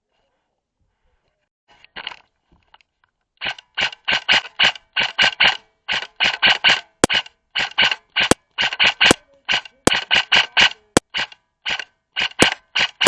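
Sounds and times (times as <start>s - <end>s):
airsoft rifle rapid shots: 3.4s - 13.0s
sharp cracking reports: 3.4s - 13.0s.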